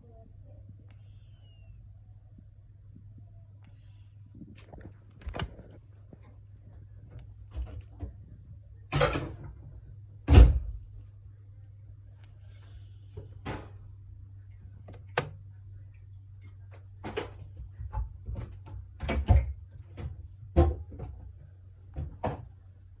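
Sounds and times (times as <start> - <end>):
steady low hum: 0.0 - 23.0
cat snoring: 0.9 - 1.8, 3.6 - 4.8, 12.2 - 13.4.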